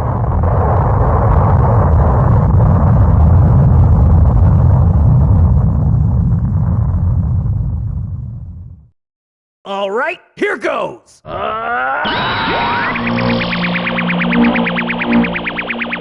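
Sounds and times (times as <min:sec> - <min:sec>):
deep rumble with rushing noise: 0:00.0 - 0:08.9.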